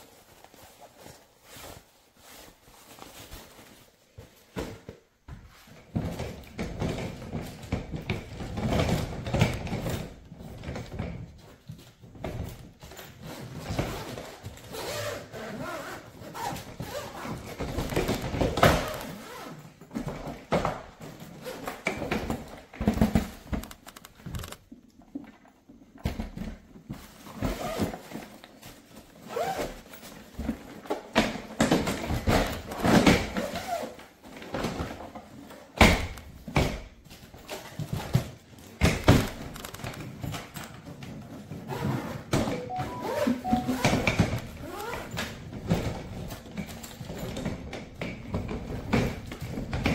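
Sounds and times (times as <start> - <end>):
objects knocking and thudding: 16.6 - 29.0, 29.8 - 33.6, 34.2 - 49.9.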